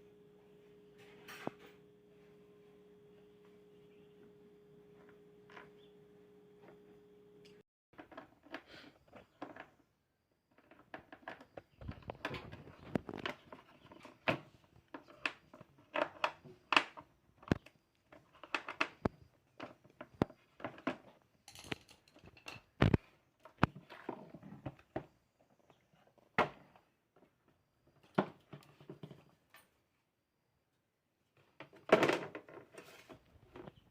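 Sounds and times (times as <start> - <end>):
steady hum: 0.0 - 7.6
clicks and knocks of fan parts: 10.6 - 25.1.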